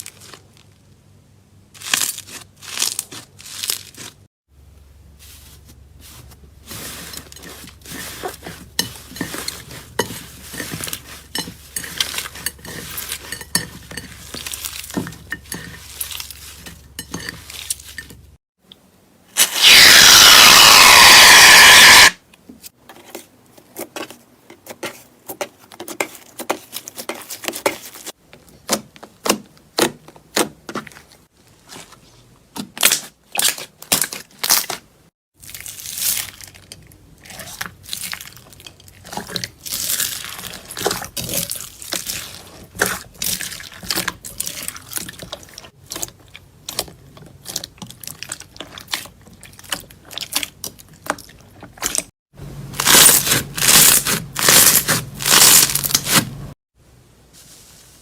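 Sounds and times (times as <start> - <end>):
loud hissing burst: 19.4 - 22.2.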